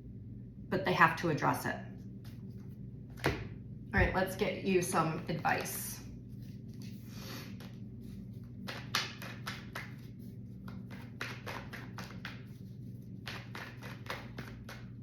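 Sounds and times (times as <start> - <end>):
cards being shuffled by hand: 5.1 - 15.0.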